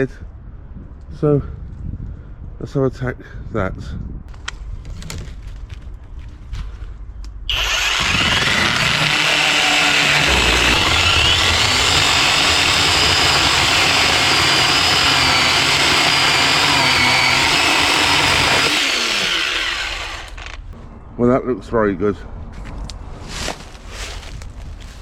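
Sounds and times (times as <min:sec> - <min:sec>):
cordless chainsaw cutting wood: 0:07.5 - 0:20.7.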